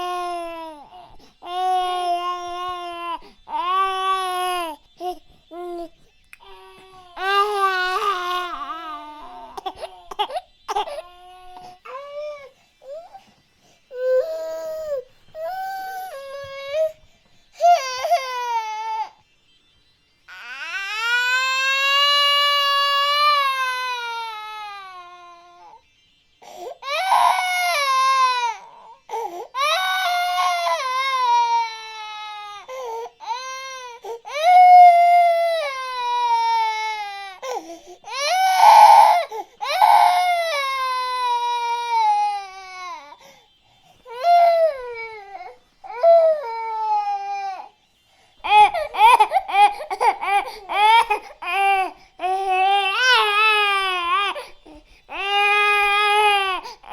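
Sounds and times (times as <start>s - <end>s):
infant crying: 0.0s - 13.2s, 17.6s - 19.2s, 26.4s - 43.3s, 44.1s - 47.7s, 48.4s - 56.9s.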